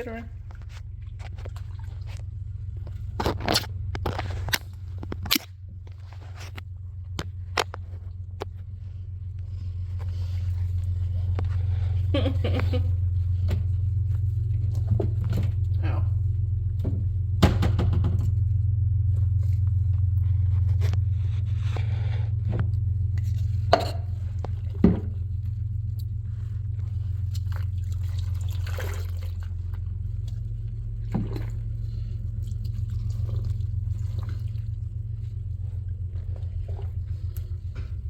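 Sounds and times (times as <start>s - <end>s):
water dripping and splashing in tub: 0.0s - 3.1s, 24.2s - 37.8s
steady low hum: 0.0s - 38.0s
scrapes: 20.2s - 24.6s.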